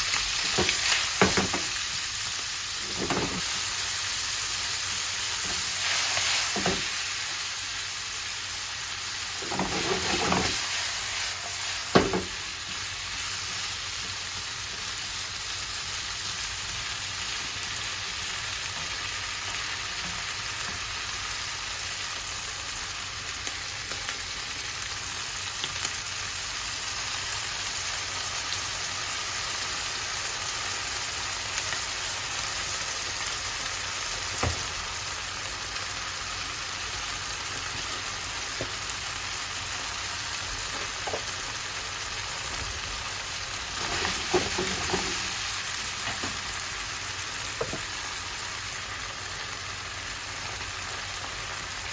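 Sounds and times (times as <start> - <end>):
food sizzling in a frying pan: 0.0 - 51.9
stirring in a pan: 9.2 - 14.1, 43.5 - 46.8.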